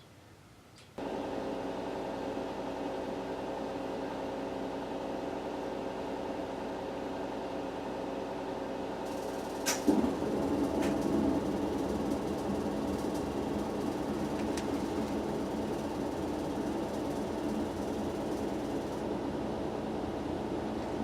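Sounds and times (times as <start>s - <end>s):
steady mechanical hum: 0.0s - 21.0s
rattling noise: 9.1s - 19.0s
sharp click: 9.6s - 10.0s.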